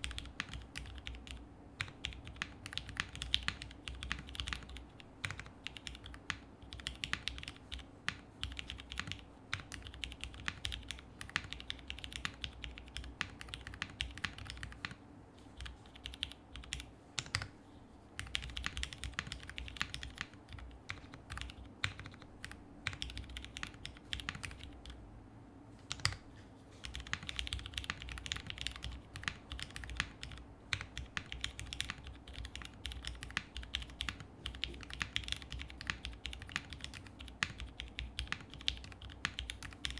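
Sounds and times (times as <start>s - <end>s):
typing on mechanical keyboard: 0.0s - 15.0s, 15.6s - 17.5s, 18.2s - 25.0s, 25.8s - 26.2s, 26.8s - 39.9s.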